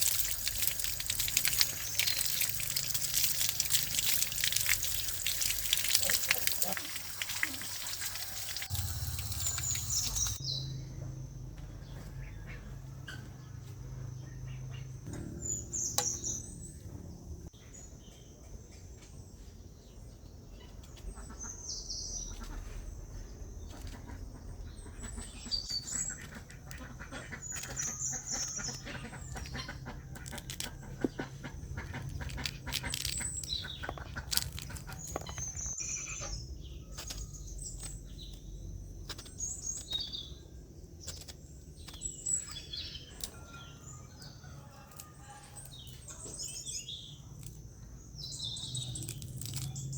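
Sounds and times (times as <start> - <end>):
high bird chirps: 0.0 - 10.8, 15.1 - 16.8
low steady hum: 0.2 - 11.4.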